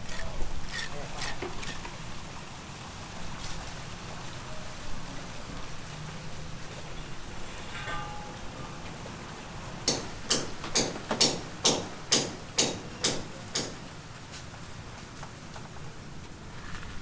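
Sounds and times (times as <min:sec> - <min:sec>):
hammer strikes: 0:07.7 - 0:08.8, 0:09.8 - 0:13.8.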